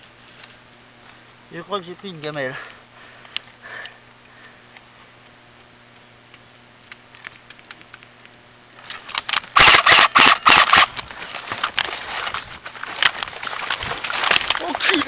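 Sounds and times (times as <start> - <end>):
airsoft gun rapid bursts: 9.5 - 10.9
faint airsoft shots: 9.6 - 10.9.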